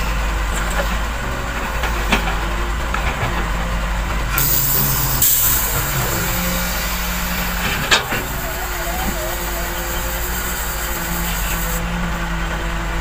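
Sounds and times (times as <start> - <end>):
construction machinery diesel drone: 0.0 - 13.0
sharp hiss of air: 4.4 - 11.8.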